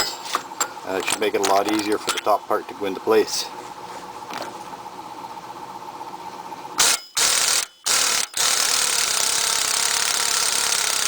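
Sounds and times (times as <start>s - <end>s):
impact wrench: 6.8s - 11.0s.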